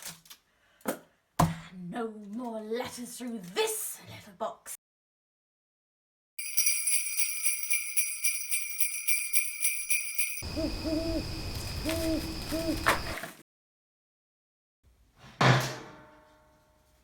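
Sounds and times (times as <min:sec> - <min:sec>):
sleigh bells jingling: 0:06.4 - 0:12.8
owl hooting: 0:10.4 - 0:13.2
steady hiss: 0:10.5 - 0:12.9.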